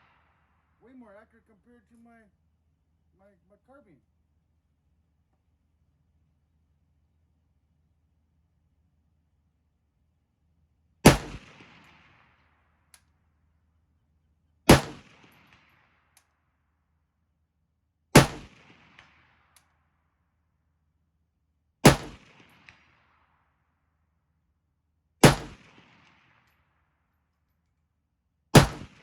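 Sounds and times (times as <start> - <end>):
rifle shots echoing: 11.0 - 12.4, 14.7 - 15.9, 18.1 - 19.4, 21.8 - 23.1, 25.2 - 26.5, 28.6 - 29.0.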